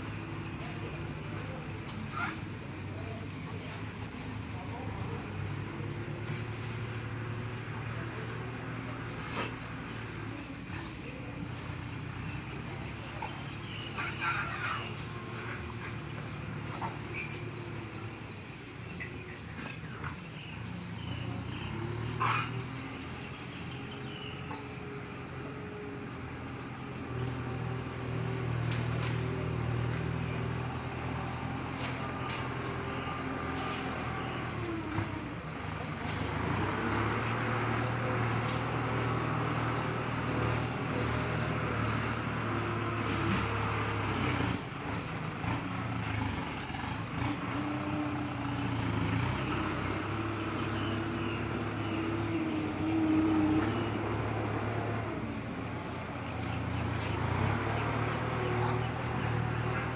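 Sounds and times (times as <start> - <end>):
vehicle engine running: 0.0 - 59.9.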